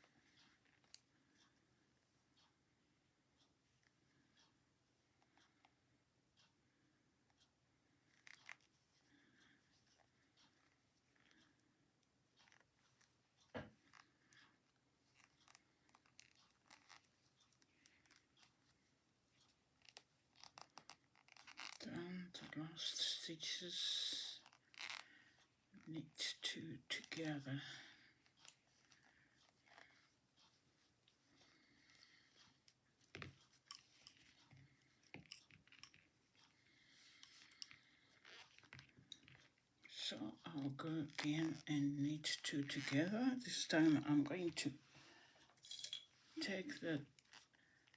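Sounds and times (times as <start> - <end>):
knitting needles clicking: 0.0 - 1.6, 8.1 - 8.8, 9.4 - 44.7.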